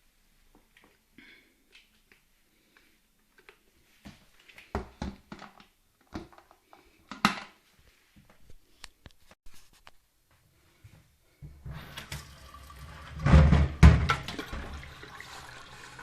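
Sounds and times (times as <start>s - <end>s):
objects knocking and clattering: 4.8s - 7.6s, 11.5s - 15.0s.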